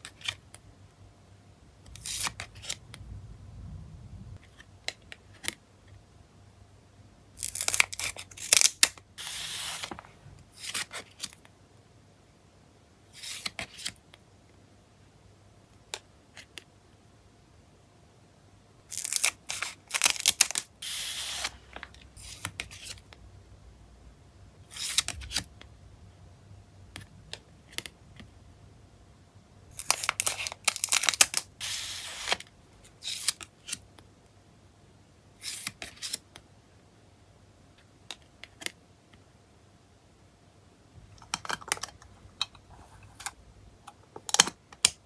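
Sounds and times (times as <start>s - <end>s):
packaging tearing and rustling: 7.4s - 10.0s, 18.9s - 23.0s, 29.7s - 32.4s.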